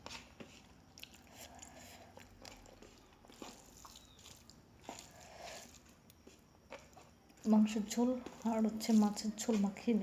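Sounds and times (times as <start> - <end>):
chewing and mouth smacking: 0.6 - 7.1.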